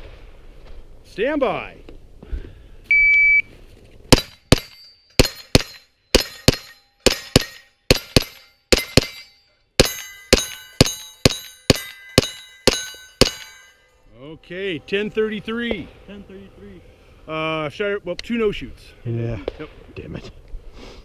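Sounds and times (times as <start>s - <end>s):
shot timer beep: 2.9s - 3.5s
steel plates ringing: 4.1s - 15.4s.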